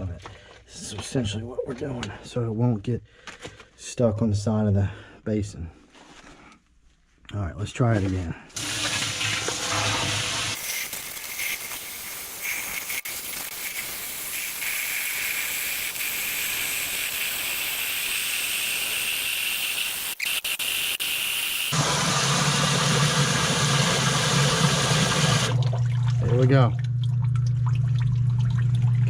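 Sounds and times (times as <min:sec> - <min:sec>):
water pouring into basin: 0:08.6 - 0:12.0
pump motor humming: 0:20.7 - 0:29.0.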